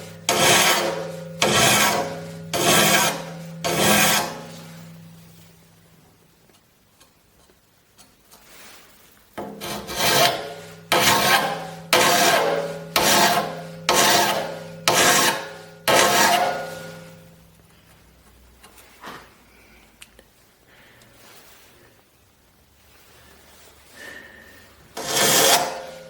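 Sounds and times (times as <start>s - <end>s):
file rasping on saw teeth: 0.3s - 4.4s, 9.6s - 16.6s, 25.0s - 25.9s.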